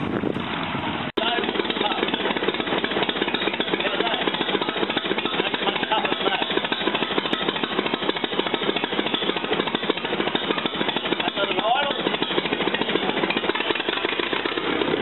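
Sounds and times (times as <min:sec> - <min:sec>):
tractor engine chugging: 0:00.0 - 0:15.0.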